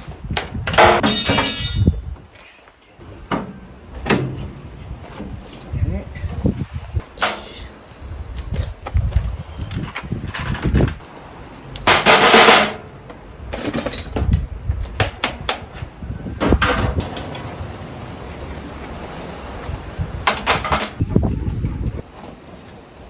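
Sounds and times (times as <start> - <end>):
knocks and clanks of repair work: 0.3 - 2.3, 3.0 - 5.8, 7.0 - 7.7, 8.3 - 19.0, 19.6 - 22.8.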